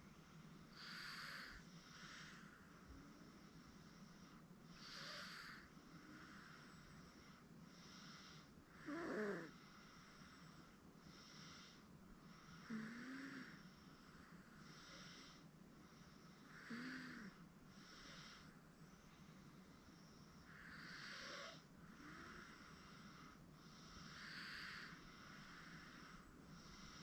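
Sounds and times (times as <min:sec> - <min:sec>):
baby snoring breaths: 0:00.7 - 0:18.6, 0:19.7 - 0:27.0.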